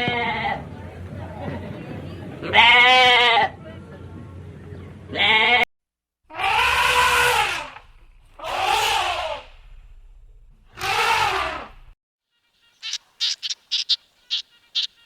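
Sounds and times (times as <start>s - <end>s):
animal calling: 12.4s - 15.0s.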